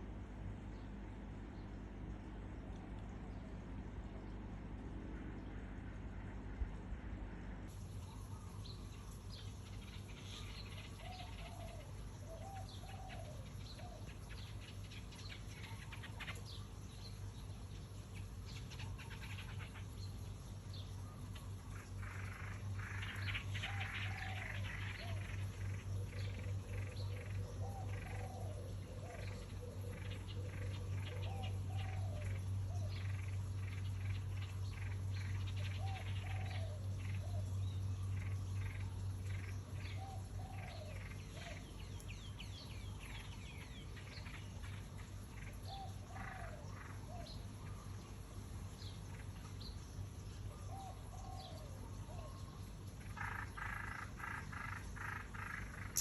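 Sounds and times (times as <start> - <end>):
low hum: 0.0 - 11.0
small birds chirping: 7.7 - 56.0
rising and falling bird calls: 54.6 - 56.0.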